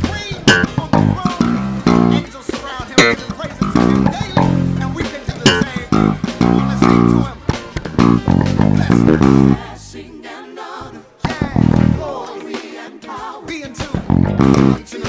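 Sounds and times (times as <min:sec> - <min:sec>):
electric bass playing: 0:00.0 - 0:10.1, 0:11.3 - 0:12.2, 0:14.0 - 0:15.0
band recording: 0:00.0 - 0:15.0.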